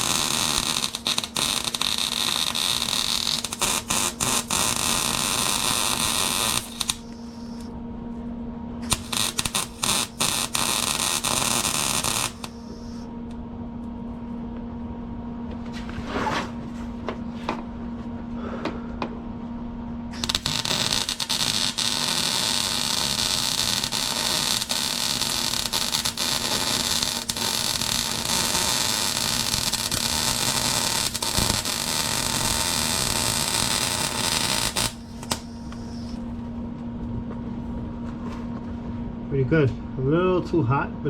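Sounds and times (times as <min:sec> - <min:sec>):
welder crackling hiss: 0:00.0 - 0:07.7, 0:08.8 - 0:13.0, 0:20.2 - 0:36.2
steady low hum: 0:00.0 - 0:41.0.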